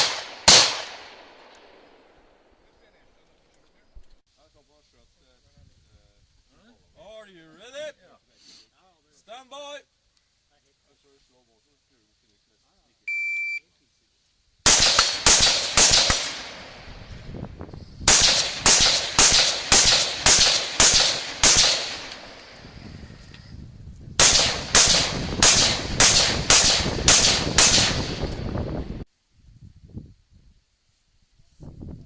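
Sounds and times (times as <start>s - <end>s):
rifle shots echoing: 0.0s - 2.6s, 14.6s - 17.1s, 18.0s - 22.6s, 24.2s - 28.6s
shot timer beep: 13.1s - 13.6s.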